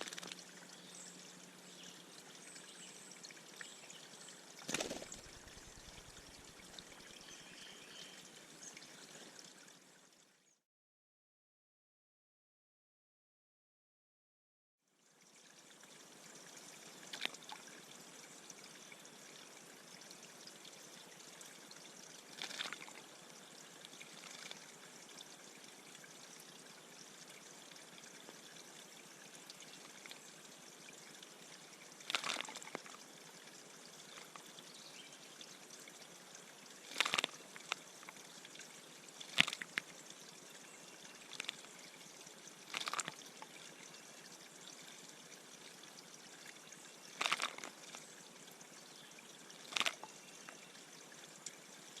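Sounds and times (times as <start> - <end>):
birds splashing in water: 0.0 - 0.7, 3.3 - 8.1, 22.2 - 23.0, 23.9 - 24.6, 32.0 - 33.0, 36.8 - 38.2, 39.2 - 39.9, 42.6 - 43.7, 47.2 - 47.9, 49.6 - 50.1
water trickling: 0.0 - 10.6, 14.9 - 52.0.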